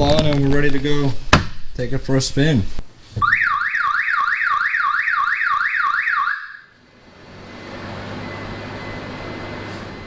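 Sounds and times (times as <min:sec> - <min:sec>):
car alarm siren whooping: 0:03.2 - 0:06.8.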